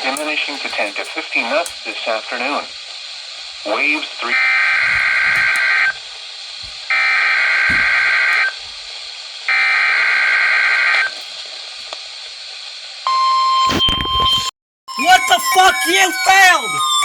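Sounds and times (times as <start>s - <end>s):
steady warning alarm tone: 0.0s - 12.0s, 14.9s - 17.0s
radio hiss: 0.0s - 16.8s
buzzing digital data bursts: 3.6s - 8.8s.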